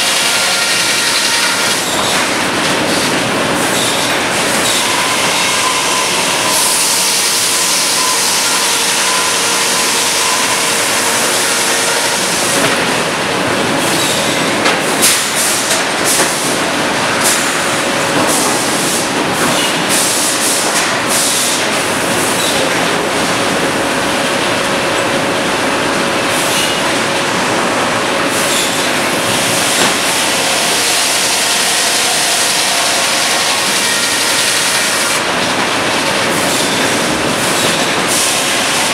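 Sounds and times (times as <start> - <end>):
sawmill machinery din: 0.0 - 38.9.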